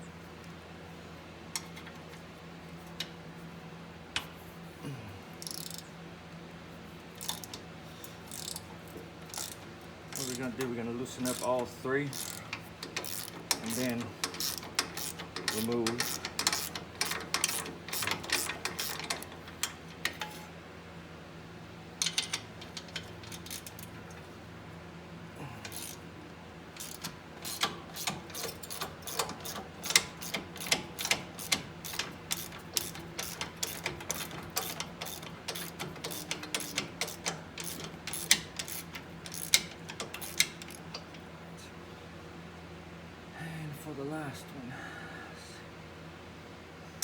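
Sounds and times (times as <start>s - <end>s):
hand ratchet clicking: 5.4s - 5.9s, 7.2s - 7.6s, 8.3s - 8.7s, 9.3s - 10.6s, 11.2s - 20.4s, 22.0s - 23.9s, 25.6s - 26.0s, 26.8s - 41.2s.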